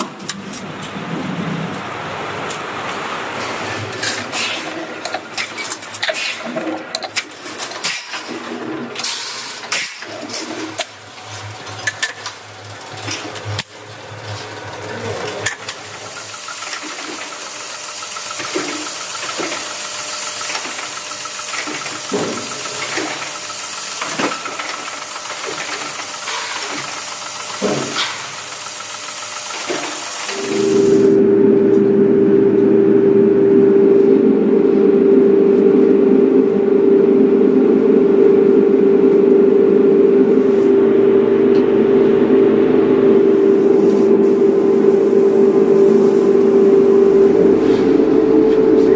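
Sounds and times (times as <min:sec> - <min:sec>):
machine whine: 0:03.5 - 0:48.9
hiss: 0:16.1 - 0:31.1.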